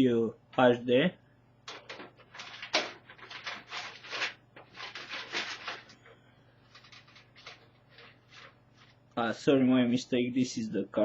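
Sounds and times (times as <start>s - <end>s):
hands rubbing and rustling cables: 1.7s - 9.2s.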